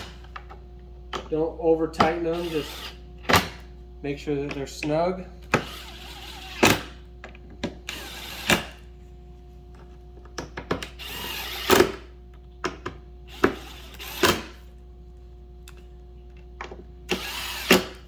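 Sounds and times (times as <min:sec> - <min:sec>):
power drill driving screws: 0:02.3 - 0:03.0, 0:05.6 - 0:06.9, 0:07.9 - 0:08.8, 0:10.9 - 0:12.0, 0:13.3 - 0:14.5, 0:17.1 - 0:18.0.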